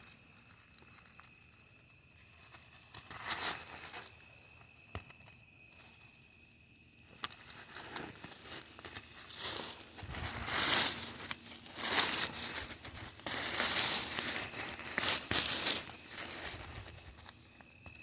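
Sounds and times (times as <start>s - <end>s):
cricket chirping: 0.0s - 18.0s
insect trill: 0.0s - 18.0s
hands digging in soil: 2.4s - 4.2s, 7.1s - 18.0s.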